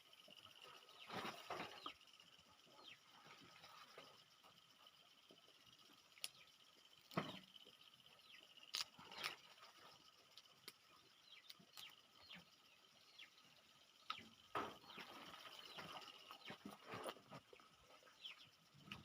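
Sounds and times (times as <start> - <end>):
faint high-pitched hum: 0.0 - 19.0
peanuts cracking and crunching: 6.0 - 9.4, 10.2 - 12.4.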